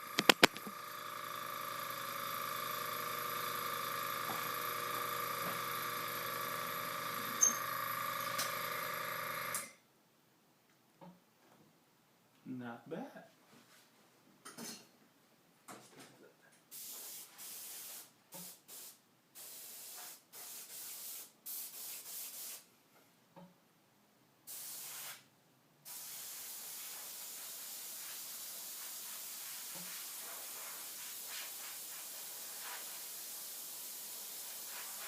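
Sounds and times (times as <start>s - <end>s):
airbrush compressed air hissing: 16.7s - 22.7s, 24.5s - 25.3s, 25.9s - 35.0s.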